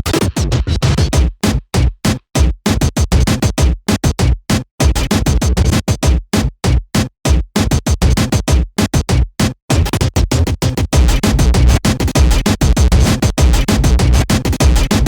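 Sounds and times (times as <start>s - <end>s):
stuttering electronic music: 0.0s - 1.2s, 9.8s - 15.0s.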